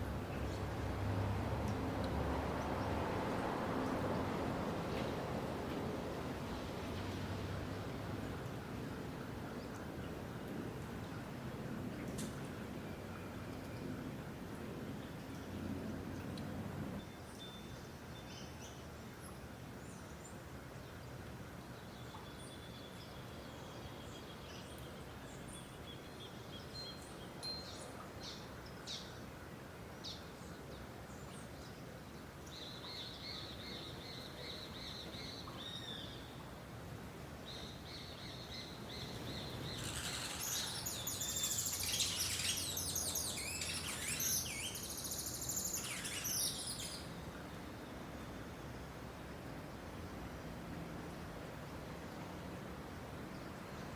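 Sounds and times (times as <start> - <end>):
steady background hiss: 0.0 - 53.9
birds singing and chirping: 37.9 - 47.2.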